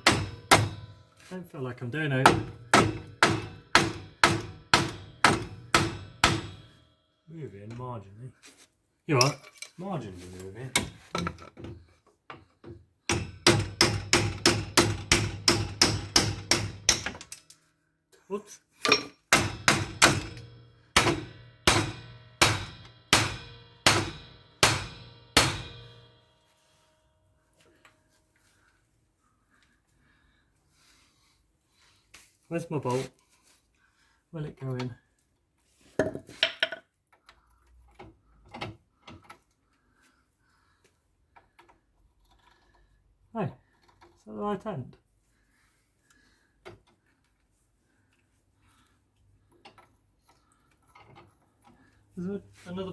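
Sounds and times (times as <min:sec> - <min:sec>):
hammer blows on metal part: 0:02.2 - 0:06.8, 0:19.3 - 0:26.5
metal tools clinking and knocking: 0:09.1 - 0:17.7, 0:18.8 - 0:19.3.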